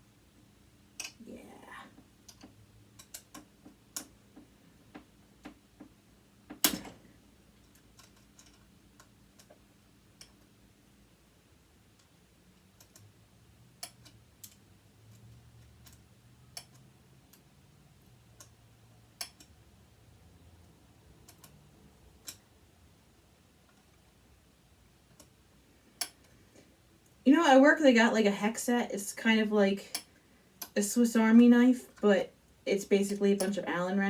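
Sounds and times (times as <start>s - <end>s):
tools and metal parts clicking: 7.6s - 8.7s.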